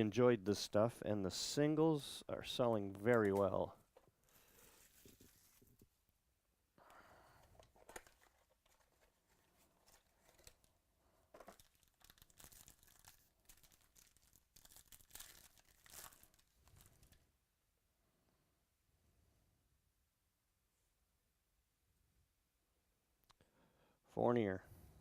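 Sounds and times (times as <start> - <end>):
cards rustling and clicking: 3.0 - 5.9, 7.4 - 10.7, 11.3 - 17.2
card pack wrappers tearing: 7.8 - 10.7, 11.4 - 17.2.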